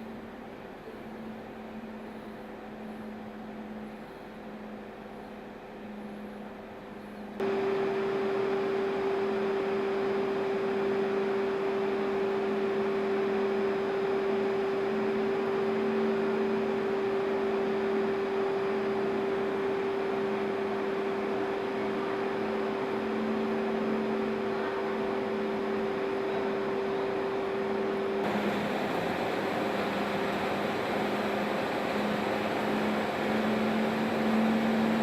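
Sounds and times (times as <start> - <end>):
boiler machinery humming: 0.0 - 35.0.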